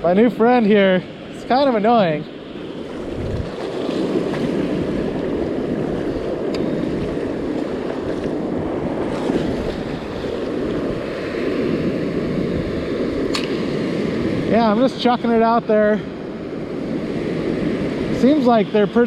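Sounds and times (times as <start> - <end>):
ocean surf washing up beach: 0.0 - 19.0
wind on microphone: 2.8 - 14.9.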